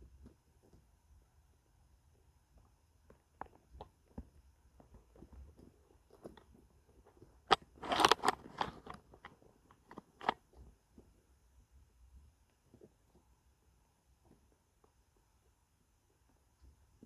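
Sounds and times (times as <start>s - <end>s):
crunching and rustling: 7.5s - 10.4s.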